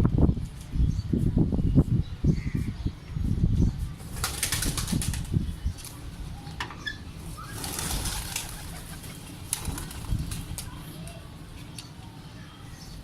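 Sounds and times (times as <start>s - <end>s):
pigeon wings flapping: 4.1s - 5.3s, 7.4s - 10.8s.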